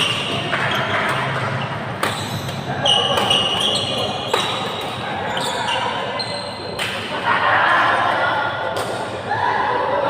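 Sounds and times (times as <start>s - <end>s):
high squeak: 2.0s - 4.7s.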